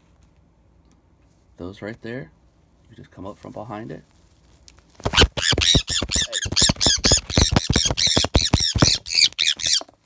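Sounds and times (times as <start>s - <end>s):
parrot squawking harshly: 5.1s - 9.9s.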